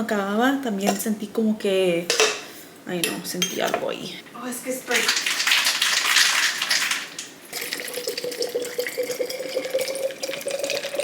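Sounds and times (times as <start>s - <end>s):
water running: 3.0s - 11.0s.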